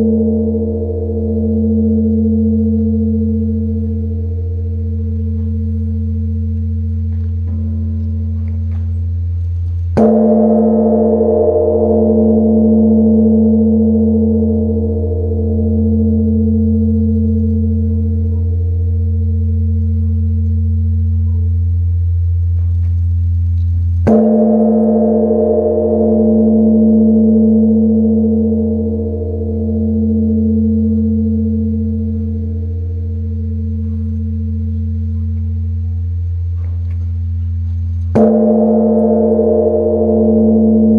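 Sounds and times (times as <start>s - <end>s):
large bronze bell booming: 0.0s - 23.2s, 23.9s - 40.9s.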